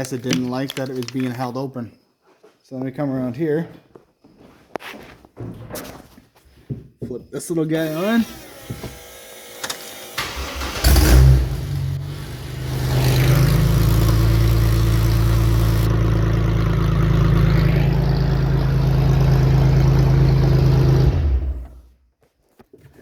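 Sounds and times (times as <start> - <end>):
car engine starting and running: 9.6 - 21.8.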